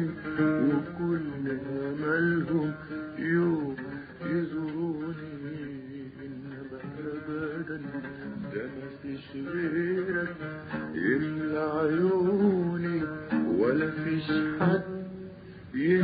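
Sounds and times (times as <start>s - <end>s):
man singing: 0.0s - 16.0s
plucked string instrument melody: 0.0s - 16.0s.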